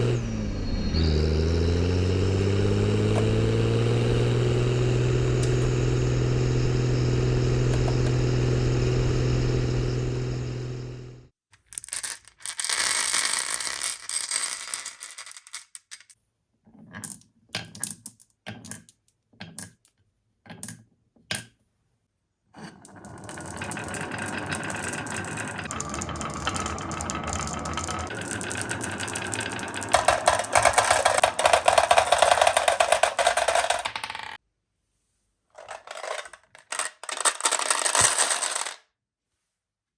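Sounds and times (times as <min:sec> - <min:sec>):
mechanical hum: 0:00.0 - 0:11.3, 0:22.8 - 0:33.9
marbles rolling and clicking: 0:03.0 - 0:09.7, 0:11.6 - 0:16.2, 0:22.6 - 0:34.4, 0:35.6 - 0:38.8.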